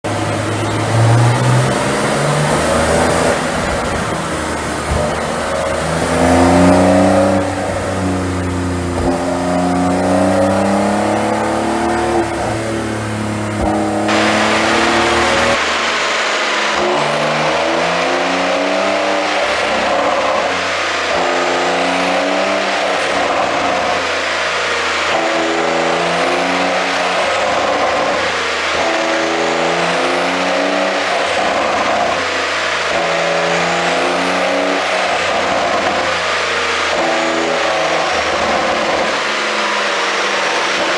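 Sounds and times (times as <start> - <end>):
car engine revving: 0.0 - 40.9
exhaust pops: 0.1 - 18.2.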